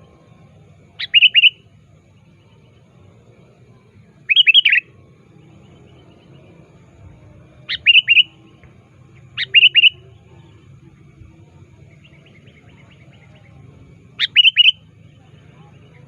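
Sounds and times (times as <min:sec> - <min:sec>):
bulbul calling: 0:00.9 - 0:01.6, 0:04.2 - 0:06.4, 0:07.7 - 0:11.1, 0:11.9 - 0:16.0.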